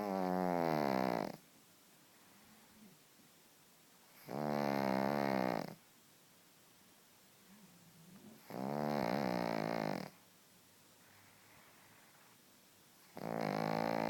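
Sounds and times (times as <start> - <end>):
dog snoring: 0.0 - 1.4, 4.1 - 5.8, 8.1 - 10.2, 13.0 - 14.0.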